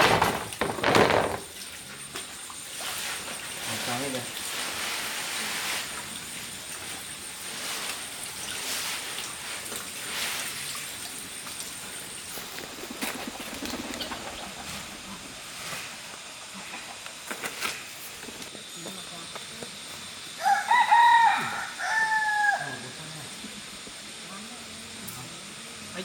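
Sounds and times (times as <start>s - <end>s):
rooster crowing: 20.4s - 23.0s.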